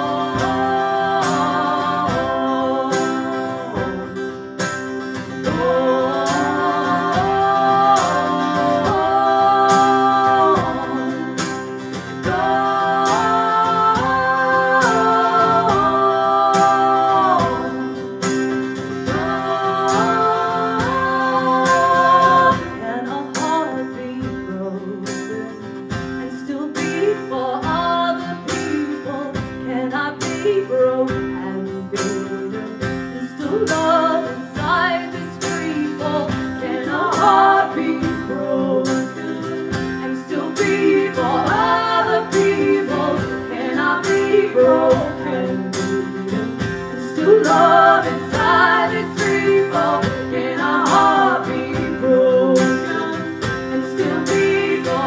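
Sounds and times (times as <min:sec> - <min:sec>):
person singing: 0:00.0 - 0:55.0
strummed acoustic guitar: 0:00.0 - 0:55.0.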